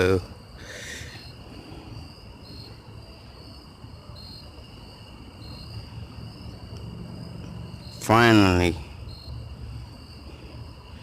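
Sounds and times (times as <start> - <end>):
short loud insect chirps: 0.0 - 3.5
insects trilling: 0.0 - 11.0.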